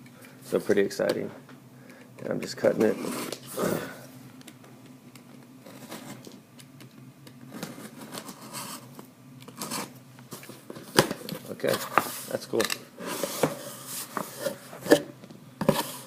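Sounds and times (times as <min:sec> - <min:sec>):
cardboard rustling: 0:09.6 - 0:16.0.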